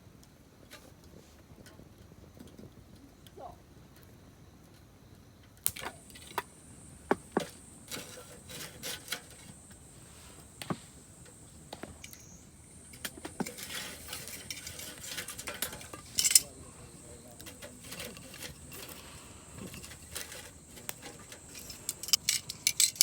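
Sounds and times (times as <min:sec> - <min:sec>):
firewood knocking and clicking: 0:05.6 - 0:23.0.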